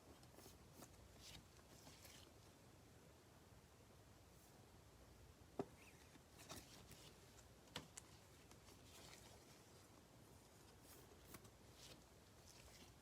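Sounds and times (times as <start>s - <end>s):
cards rustling into plastic sleeves: 0.1s - 2.4s, 5.8s - 13.0s.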